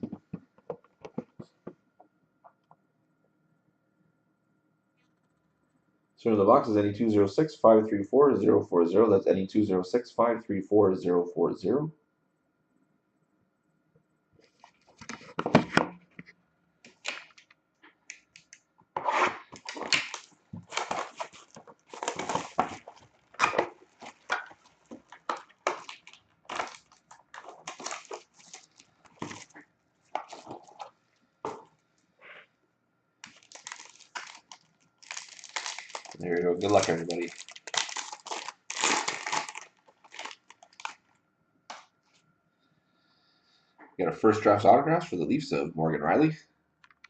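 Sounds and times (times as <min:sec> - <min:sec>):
card packaging tearing: 0:19.2 - 0:29.5, 0:33.2 - 0:41.0.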